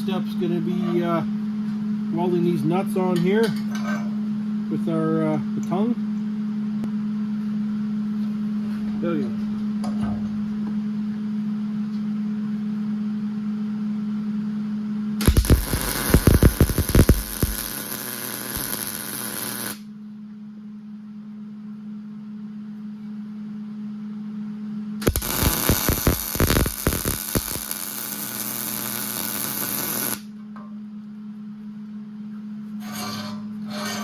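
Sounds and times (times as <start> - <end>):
steady low hum: 0.0 - 34.0
crackling welding arc: 15.2 - 19.9, 25.0 - 30.3.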